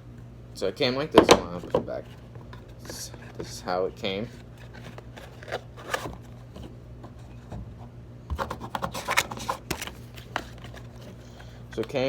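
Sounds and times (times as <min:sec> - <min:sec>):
packaging rubbing and scraping: 0:02.0 - 0:07.4, 0:08.4 - 0:11.6.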